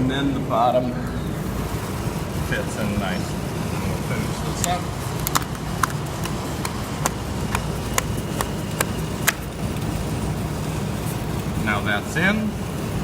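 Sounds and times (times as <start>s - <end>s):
steady low rumble: 0.0s - 13.0s
sharp clicks: 4.6s - 9.9s.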